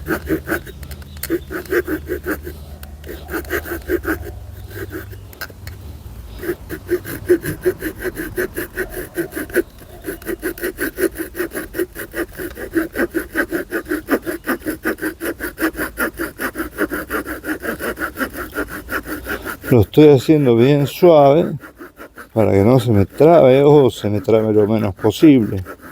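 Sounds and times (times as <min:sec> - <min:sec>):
small saw cutting a log: 0:00.0 - 0:25.9.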